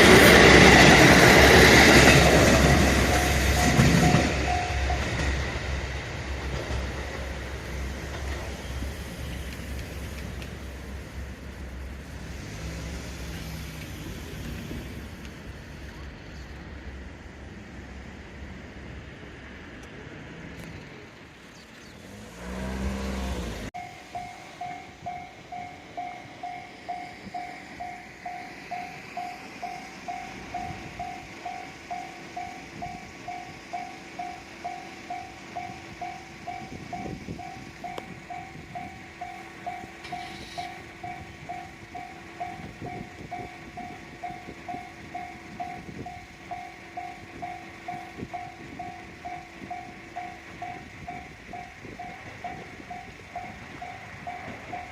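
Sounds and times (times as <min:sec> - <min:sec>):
level-crossing warning bell ringing: 0:00.0 - 0:09.3, 0:23.8 - 0:54.9
vehicle rumbling past: 0:21.9 - 0:23.8.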